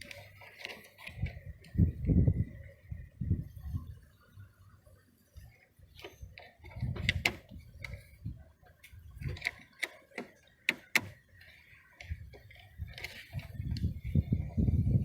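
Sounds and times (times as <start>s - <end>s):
door latch clicks and taps: 9.8s - 11.2s.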